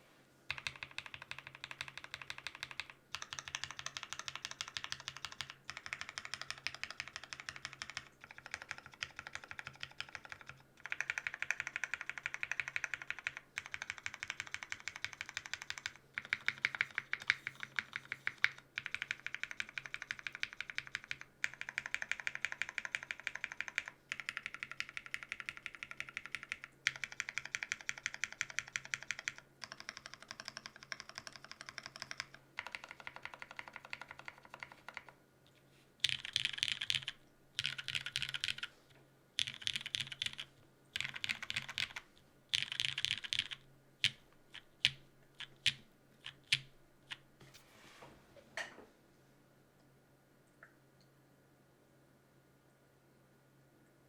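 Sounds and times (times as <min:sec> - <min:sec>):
mechanical keyboard keystroke clacks: 0:39.4 - 0:46.6.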